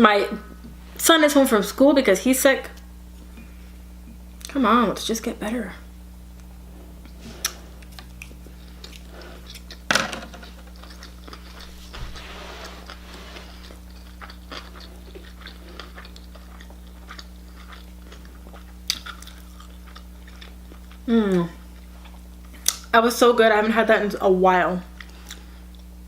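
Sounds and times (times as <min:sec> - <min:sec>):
faint steady hum: 0:00.0 - 0:26.0
person chewing: 0:06.8 - 0:22.8, 0:25.0 - 0:26.0.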